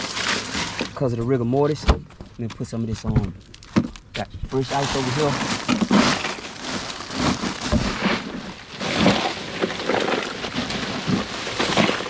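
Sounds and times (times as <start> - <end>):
ice cubes clattering: 0.0 - 1.0, 4.7 - 12.0.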